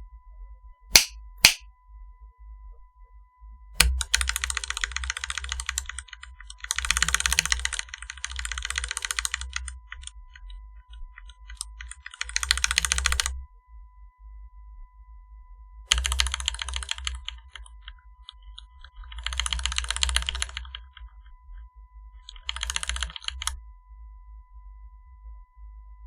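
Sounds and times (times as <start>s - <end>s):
mechanical keyboard typing: 1.0s - 1.6s, 6.8s - 9.5s, 12.1s - 13.3s.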